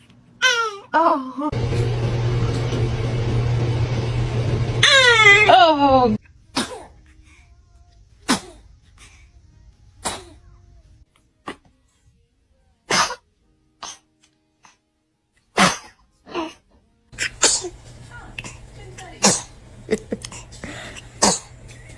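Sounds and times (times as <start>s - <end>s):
babies sneezing: 6.6s - 7.0s, 8.2s - 8.7s, 10.0s - 10.4s, 12.9s - 13.2s, 13.8s - 14.8s, 15.6s - 16.6s, 19.2s - 19.5s, 21.2s - 21.5s.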